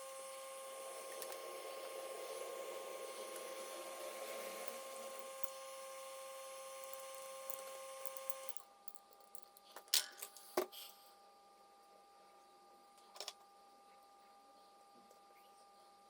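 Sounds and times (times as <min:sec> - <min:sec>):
small electric machine humming: 0:00.0 - 0:09.8.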